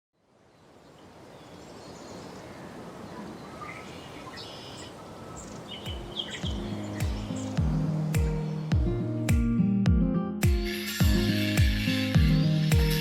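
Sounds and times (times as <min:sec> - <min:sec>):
steady background hiss: 0:00.2 - 0:07.3
bird chirps: 0:00.9 - 0:08.7
music with deep bass drum: 0:06.4 - 0:13.0.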